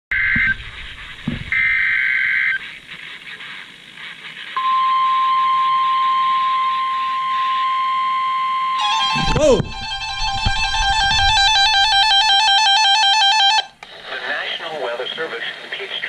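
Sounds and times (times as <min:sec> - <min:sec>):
steady warning alarm tone: 0:00.1 - 0:02.6, 0:04.6 - 0:13.8
radio hiss: 0:00.2 - 0:04.6, 0:13.7 - 0:16.0
warbling data tones: 0:08.8 - 0:12.9.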